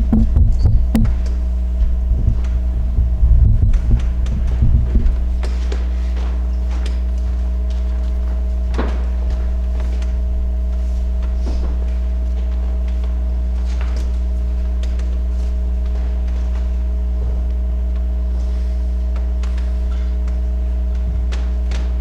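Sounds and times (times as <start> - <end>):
higher steady tones: 0.0 - 5.4
soft knocks: 0.0 - 6.4
footsteps: 0.0 - 14.4
low electrical hum: 0.0 - 22.0
rustling of people moving: 0.0 - 22.0.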